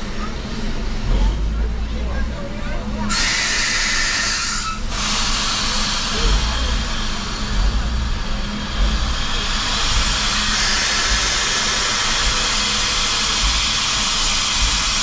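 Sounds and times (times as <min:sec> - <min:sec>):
steam hissing from locomotive: 0:03.0 - 0:15.0.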